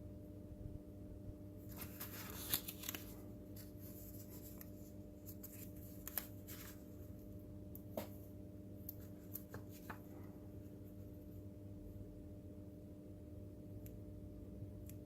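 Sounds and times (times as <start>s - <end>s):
faint hum: 0.0s - 15.0s
paper rustling and scraping: 1.6s - 7.2s, 8.9s - 10.2s.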